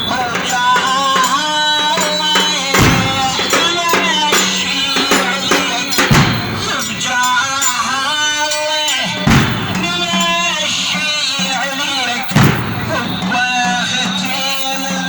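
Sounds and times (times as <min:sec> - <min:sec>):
deep percussive thumps: 0:00.0 - 0:06.9, 0:09.3 - 0:09.9
man chanting: 0:00.0 - 0:15.0.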